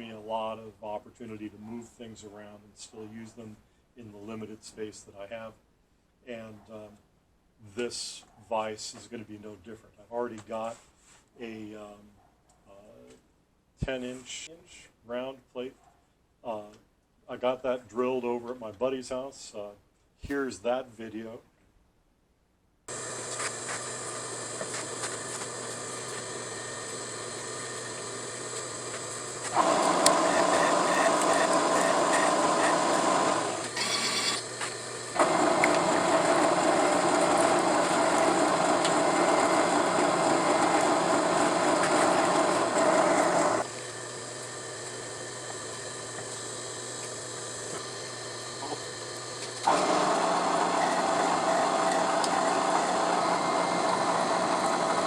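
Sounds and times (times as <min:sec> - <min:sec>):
milling machine drilling metal: 0:22.9 - 0:55.0.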